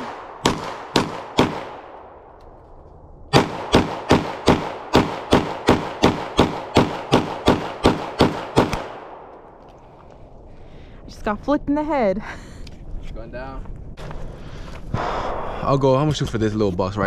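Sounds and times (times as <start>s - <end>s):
pistol shots with echo: 0.0s - 2.2s, 3.3s - 9.4s.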